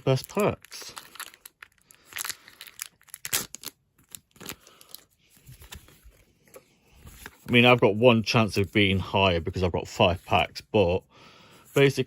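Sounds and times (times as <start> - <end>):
foil wrapper tearing and crinkling: 0.0 - 5.8.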